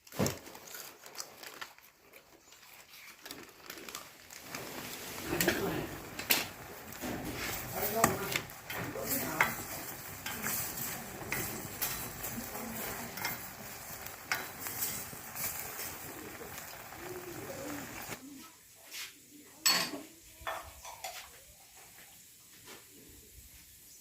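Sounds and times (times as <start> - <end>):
food sizzling: 1.0 - 18.5
utensils clinking on a pan: 4.5 - 18.2, 19.6 - 21.3.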